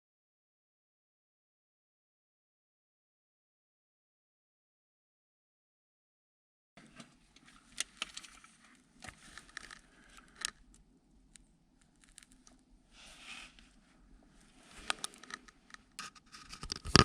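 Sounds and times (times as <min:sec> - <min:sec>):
rustling: 0:06.8 - 0:10.8, 0:11.8 - 0:17.0.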